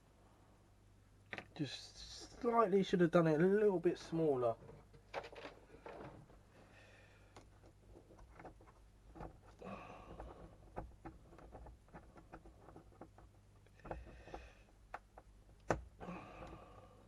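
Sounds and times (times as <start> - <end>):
soft rustling: 4.0 - 15.6.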